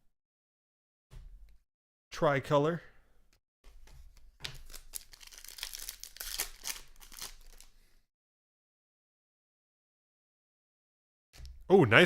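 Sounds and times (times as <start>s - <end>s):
foil wrapper tearing and crinkling: 4.6s - 7.8s.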